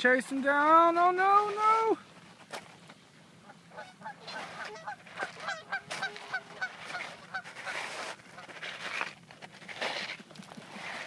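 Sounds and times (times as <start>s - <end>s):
geese honking: 3.4s - 8.5s.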